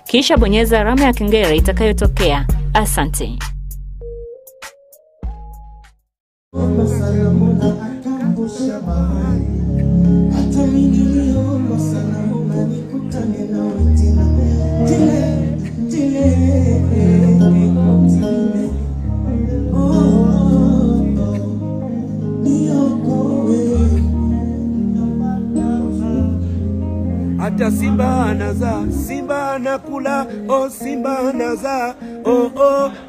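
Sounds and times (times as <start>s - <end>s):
song with singing and guitar: 6.6s - 33.0s.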